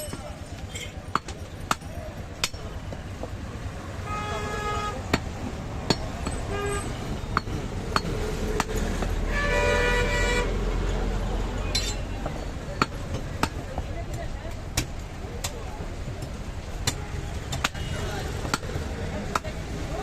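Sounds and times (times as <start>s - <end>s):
vehicle horns honking: 4.0s - 5.1s, 6.5s - 7.2s, 9.3s - 10.6s.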